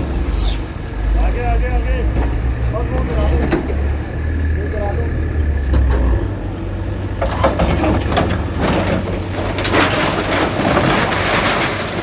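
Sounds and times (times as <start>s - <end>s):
bulldozer diesel engine running: 0.0s - 12.0s
structure crashing and debris falling: 7.1s - 12.0s.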